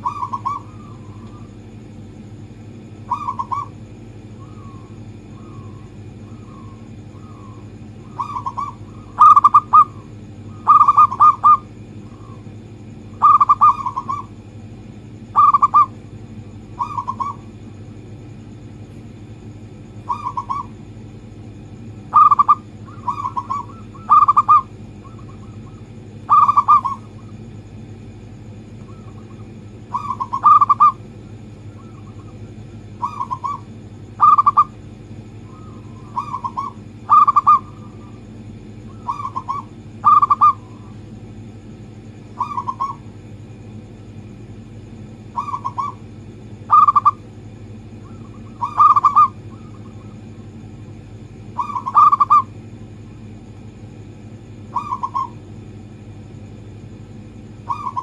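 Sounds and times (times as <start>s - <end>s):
dove cooing: 0.0s - 1.7s, 2.9s - 14.5s, 15.3s - 17.6s, 19.6s - 20.9s, 22.0s - 27.6s, 28.7s - 34.8s, 35.4s - 41.0s, 42.2s - 43.2s, 45.2s - 47.2s, 47.9s - 50.3s, 51.4s - 52.7s, 54.6s - 55.5s, 57.6s - 58.0s
steady low hum: 0.0s - 58.0s.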